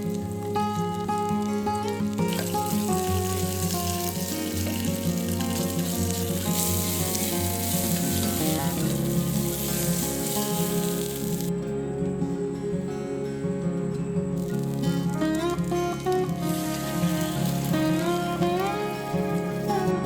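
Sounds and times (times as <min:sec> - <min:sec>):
background music: 0:00.0 - 0:20.0
food sizzling in hot oil: 0:01.8 - 0:11.5, 0:16.0 - 0:19.7.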